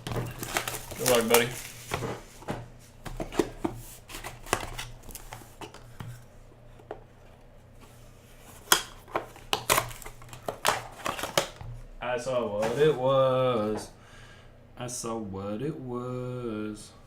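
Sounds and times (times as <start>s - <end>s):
cardboard and wrapper rustling: 0.0s - 6.2s, 7.8s - 11.6s.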